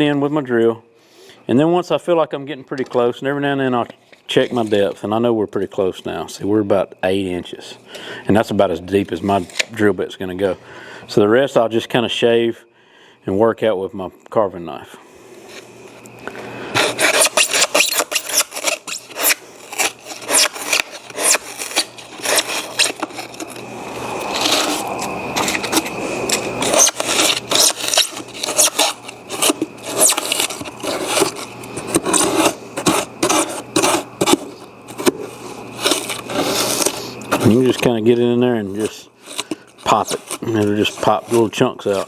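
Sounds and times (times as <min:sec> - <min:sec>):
knife scraping foam: 0:16.6 - 0:37.9, 0:38.7 - 0:42.0.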